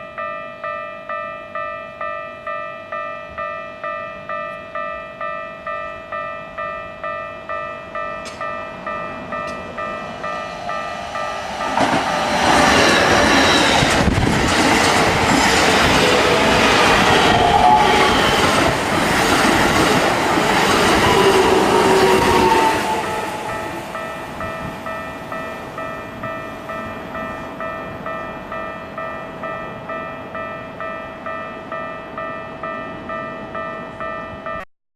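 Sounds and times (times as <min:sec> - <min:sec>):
electric train passing: 0:00.0 - 0:34.6
level crossing bell ringing: 0:22.0 - 0:34.7.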